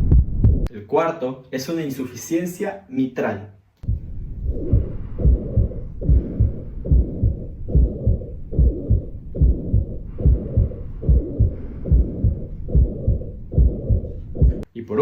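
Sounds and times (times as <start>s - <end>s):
blowing heart murmur: 0.0s - 0.7s, 3.8s - 14.6s
heartbeat lub-dub: 0.0s - 0.7s, 3.8s - 14.6s.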